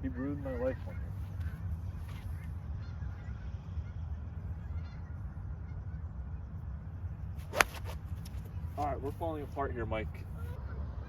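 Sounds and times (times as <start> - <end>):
golf club striking ball: 7.5 - 8.0.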